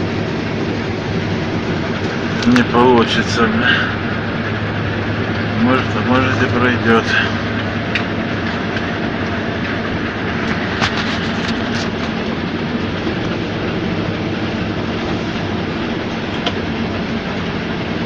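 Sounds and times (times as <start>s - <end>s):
combine harvester engine hum: 0.0s - 18.0s.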